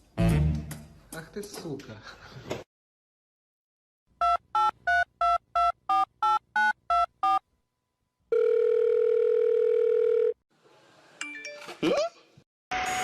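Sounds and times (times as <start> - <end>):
phone ringing tone: 8.3 - 10.4.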